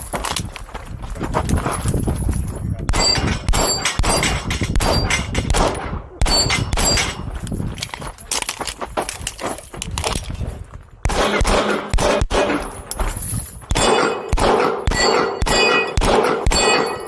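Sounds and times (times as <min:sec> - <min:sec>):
pistol shots: 0:02.9 - 0:07.2, 0:11.0 - 0:12.8, 0:13.7 - 0:17.0
steel targets clanging: 0:13.7 - 0:17.0.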